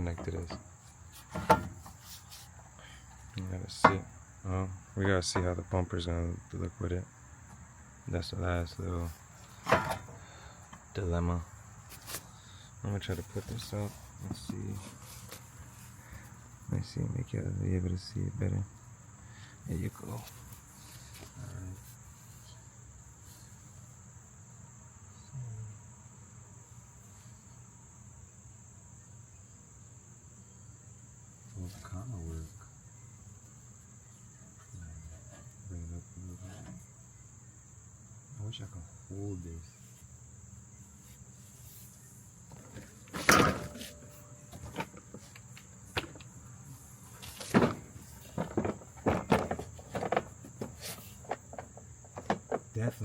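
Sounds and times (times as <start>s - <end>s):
car body parts knocking: 0.0s - 2.0s, 9.6s - 10.2s, 42.5s - 46.3s, 47.2s - 52.8s
crickets trilling: 0.0s - 53.0s.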